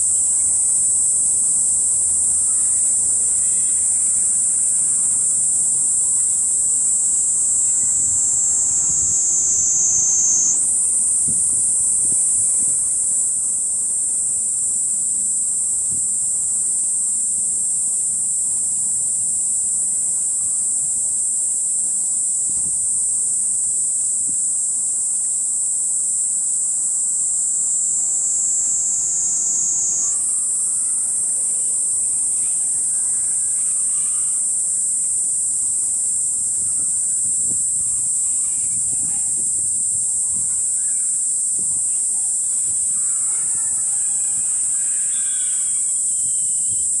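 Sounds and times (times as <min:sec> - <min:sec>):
cicada buzzing shrilly: 0:00.0 - 0:47.0.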